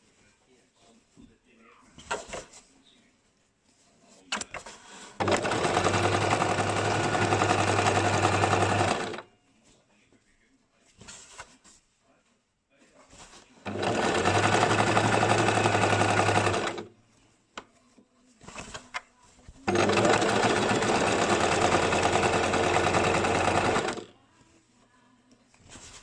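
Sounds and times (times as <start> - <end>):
sewing machine stitching: 4.3 - 9.3, 13.6 - 16.9, 18.4 - 18.9, 19.6 - 24.1.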